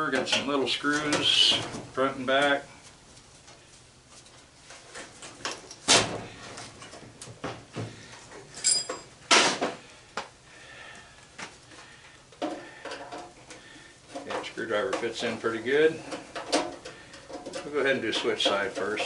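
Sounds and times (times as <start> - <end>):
short metallic ring: 8.6 - 9.1
knocks and scrapes of sheet metal: 14.1 - 19.0.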